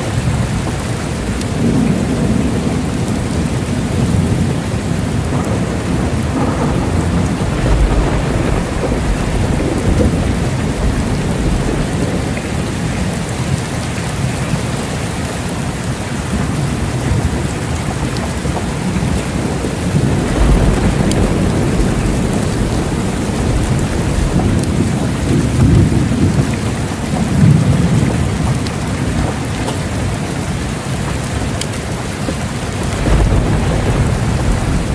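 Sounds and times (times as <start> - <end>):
steady rain falling: 0.0 - 34.9
rolling thunder: 0.2 - 14.8, 16.3 - 34.9.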